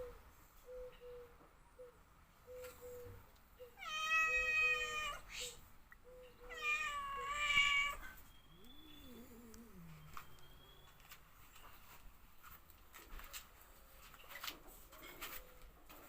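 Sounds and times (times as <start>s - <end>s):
cat meowing: 3.7s - 5.4s, 6.4s - 8.2s.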